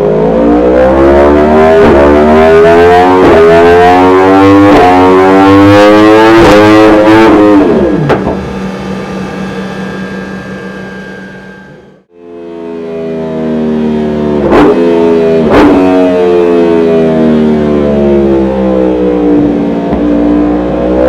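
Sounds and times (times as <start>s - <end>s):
motorcycle engine revving: 3.3s - 12.1s
exhaust crack: 6.3s - 12.1s.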